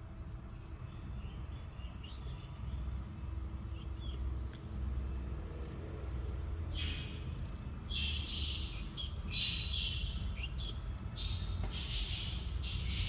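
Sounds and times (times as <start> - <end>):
small birds chirping: 3.6 - 5.3, 6.0 - 13.0
steady low rumble: 6.6 - 12.9.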